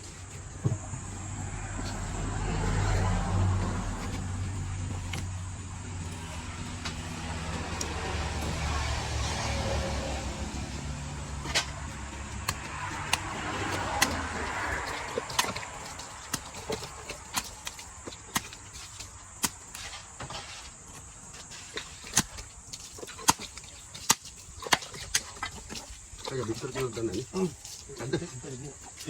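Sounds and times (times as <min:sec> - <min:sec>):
passing traffic: 0:00.0 - 0:21.5
cleaver chopping fish: 0:11.3 - 0:28.2.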